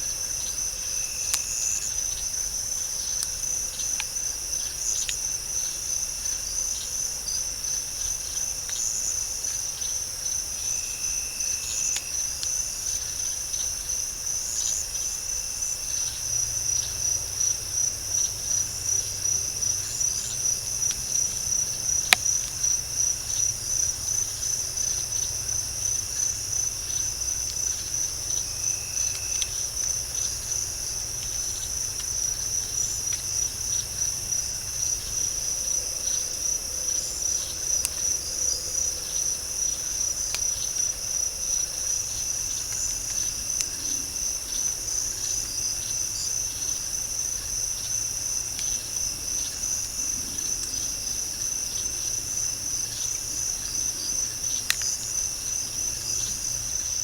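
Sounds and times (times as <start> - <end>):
night insects chirring: 0.0 - 57.0
faint ticks: 54.5 - 55.0.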